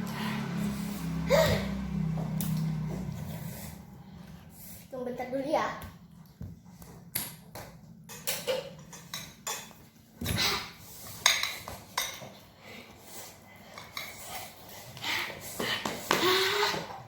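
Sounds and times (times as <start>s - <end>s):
utensils clinking on dishes: 8.0s - 17.0s.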